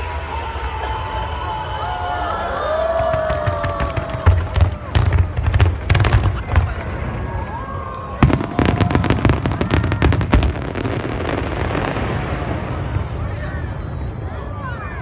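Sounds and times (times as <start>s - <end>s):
fireworks bursting: 3.0s - 14.3s.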